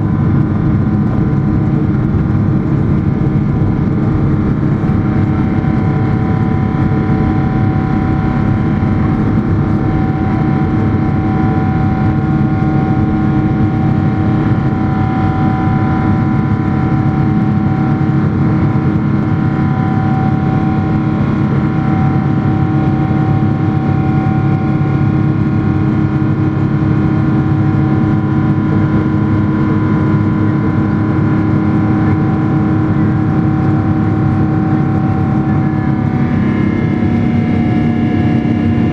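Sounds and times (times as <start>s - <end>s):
jet engine drone in cabin: 0.0s - 38.9s.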